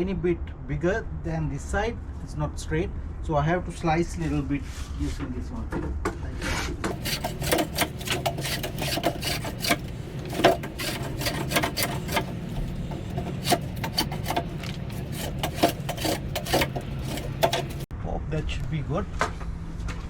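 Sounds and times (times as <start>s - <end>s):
hand tool scraping wood: 6.4s - 17.9s.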